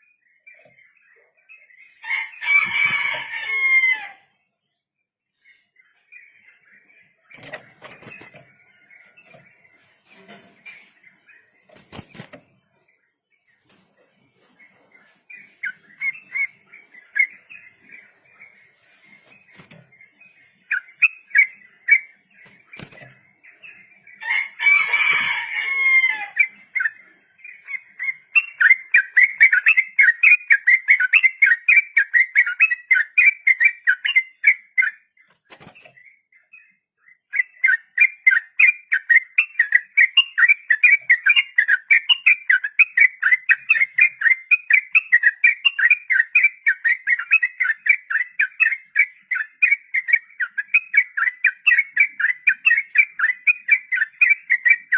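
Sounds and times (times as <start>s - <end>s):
bulbul singing: 15.0s - 54.9s.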